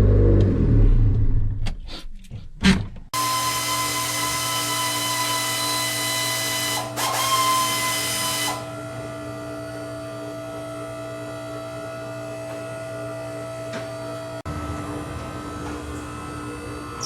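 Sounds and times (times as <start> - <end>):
power tool whirring: 3.2 - 10.6
steady machine hum: 3.2 - 17.0.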